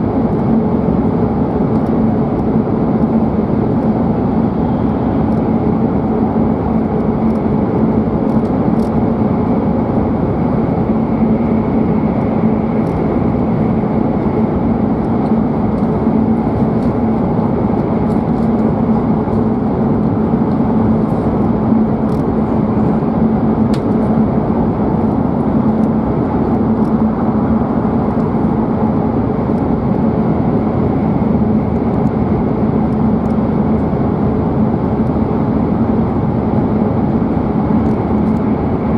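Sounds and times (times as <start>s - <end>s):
constant low hum: 0.0s - 38.9s.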